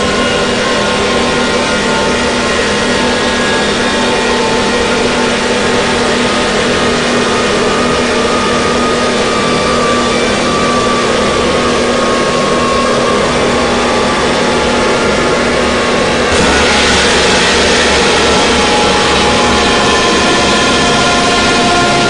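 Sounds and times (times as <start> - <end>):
steady low hums: 0.0 - 22.0
harsh noise static: 14.5 - 22.0.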